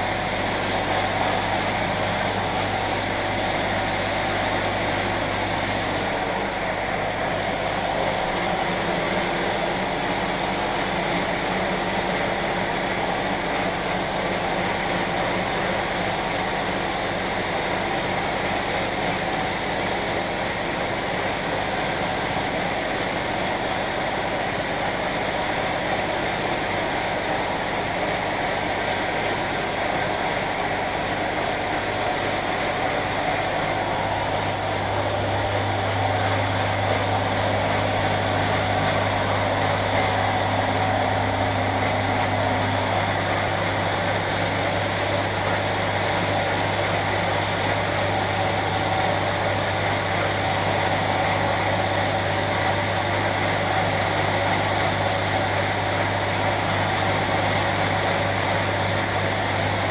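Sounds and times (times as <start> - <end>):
machinery hiss and hum: 0.0 - 59.9.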